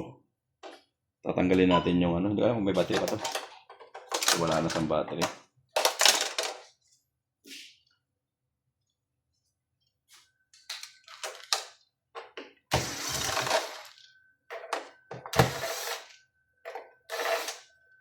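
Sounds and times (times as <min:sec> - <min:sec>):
hard parts clicking and knocking: 0:02.8 - 0:06.6
hard parts clattering: 0:02.8 - 0:06.7
faint high-pitched tone: 0:12.8 - 0:18.0.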